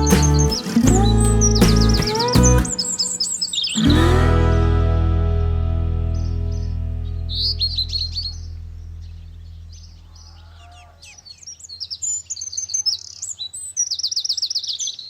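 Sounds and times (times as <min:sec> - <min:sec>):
birds chirping and twittering: 0:00.0 - 0:04.0, 0:06.2 - 0:15.0
background music: 0:00.0 - 0:07.7.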